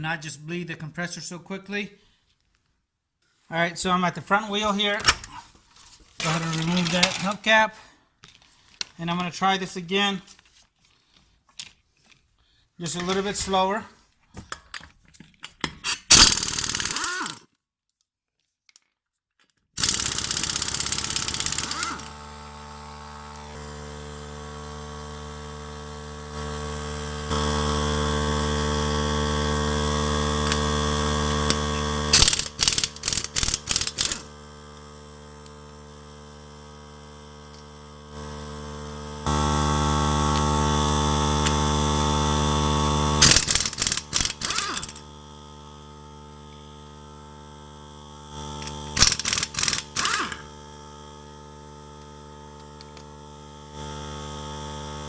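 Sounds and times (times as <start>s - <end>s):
impact wrench hammering lug nuts: 15.6s - 17.4s, 19.8s - 22.8s, 31.3s - 34.3s, 43.2s - 45.1s, 48.6s - 50.5s
air compressor motor running: 16.1s - 17.4s, 19.8s - 55.0s.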